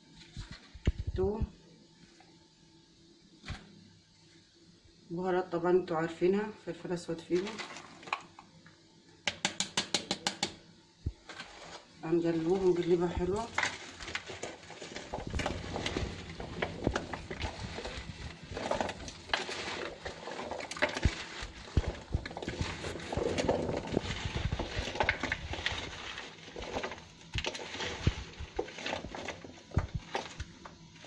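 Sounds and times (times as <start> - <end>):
chopped vegetables being tossed by hand: 7.3 - 8.2, 11.1 - 31.0.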